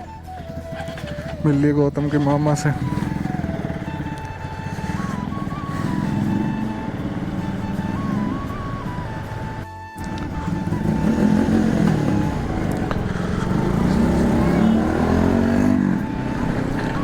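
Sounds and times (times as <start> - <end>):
motorcycle engine revving: 0.0 - 17.0
simple background music melody: 0.0 - 17.0.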